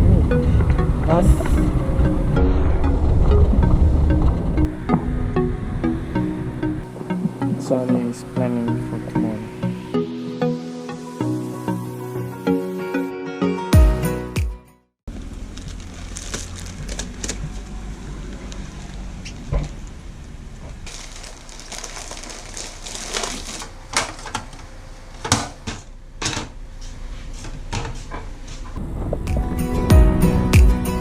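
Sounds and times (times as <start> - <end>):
steady low rumble: 0.0 - 10.0, 28.8 - 31.0.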